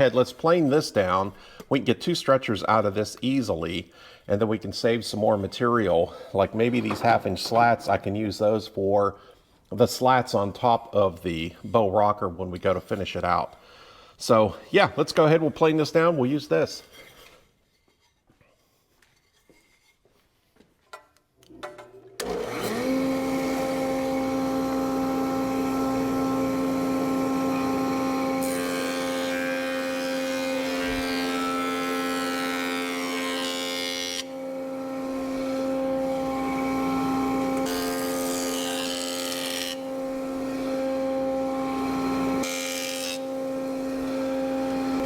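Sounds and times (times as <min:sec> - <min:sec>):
planer cutting wood: 0:22.1 - 0:45.0
power planer humming: 0:22.2 - 0:45.0.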